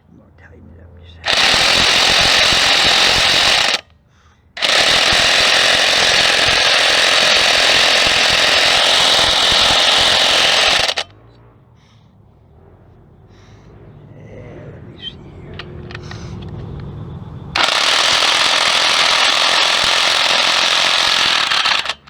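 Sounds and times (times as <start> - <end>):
impact wrench hammering: 1.2 - 3.8, 4.6 - 11.1, 17.6 - 22.0.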